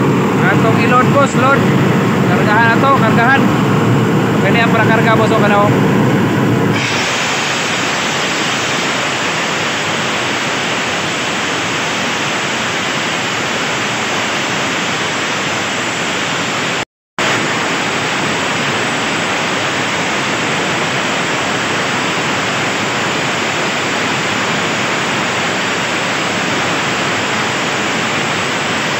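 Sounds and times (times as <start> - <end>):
diesel engine running: 0.0 - 10.6
compressed air rushing: 0.0 - 12.1.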